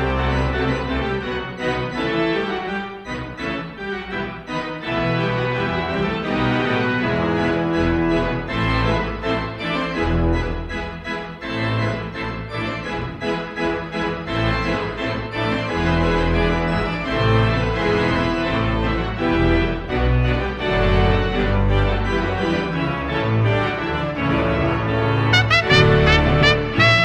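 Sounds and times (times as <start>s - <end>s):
organ-like keyboard music: 0.0s - 27.0s
bass line: 25.3s - 27.0s.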